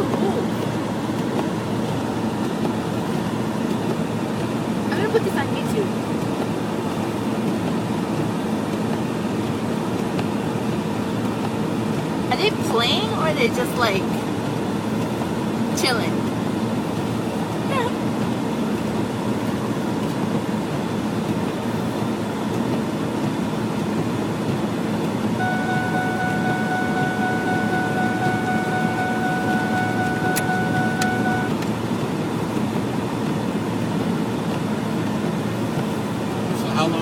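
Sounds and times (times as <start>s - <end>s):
vehicle engine and road noise: 0.0s - 37.0s
steady high tone: 25.4s - 31.6s.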